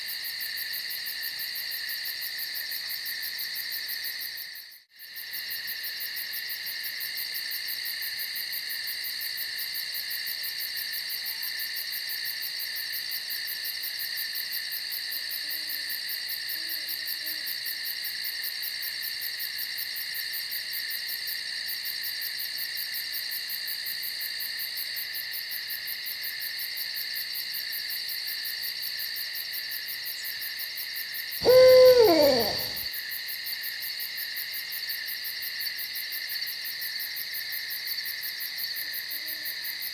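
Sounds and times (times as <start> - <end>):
high insect trills: 31.4 - 32.8
owl hooting: 31.4 - 32.9.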